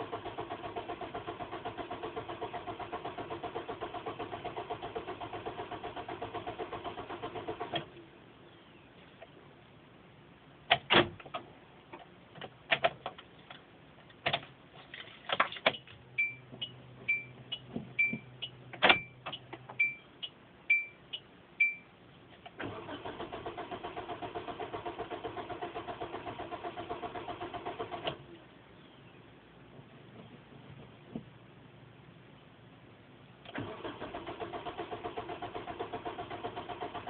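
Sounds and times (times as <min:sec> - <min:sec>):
starter cranking car engine: 0:00.0 - 0:08.0, 0:22.6 - 0:28.3, 0:33.5 - 0:37.0
car warning chime beeping: 0:16.2 - 0:21.9.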